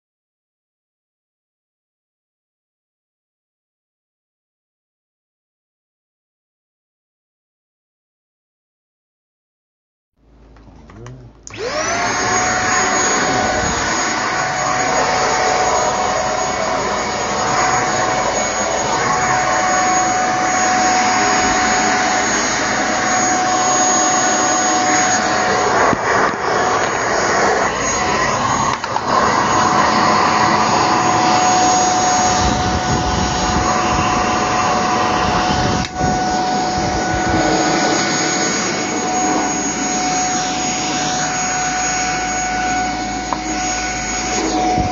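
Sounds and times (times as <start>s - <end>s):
vacuum cleaner running: 10.8s - 44.9s.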